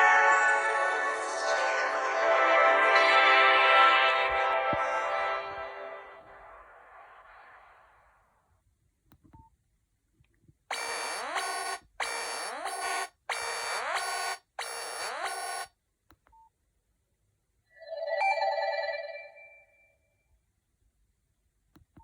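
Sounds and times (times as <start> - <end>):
mobile phone ringtone: 17.7 - 20.1
phone beep: 17.8 - 19.9.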